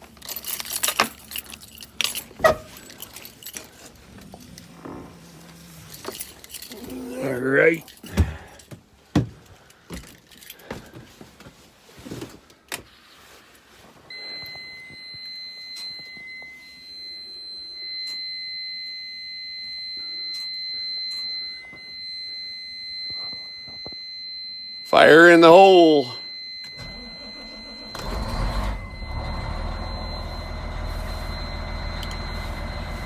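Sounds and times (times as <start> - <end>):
keys jangling: 0.0 - 8.7, 9.6 - 10.7
low hum: 28.0 - 33.0.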